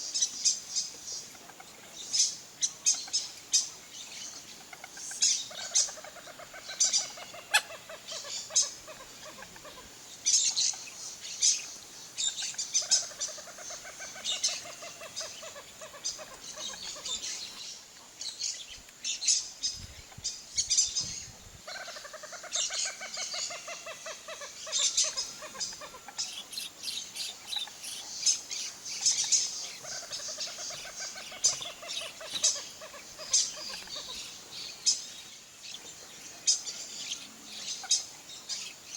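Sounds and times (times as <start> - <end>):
small birds chirping: 0.0 - 38.9
marsh bird chattering call: 21.7 - 35.0.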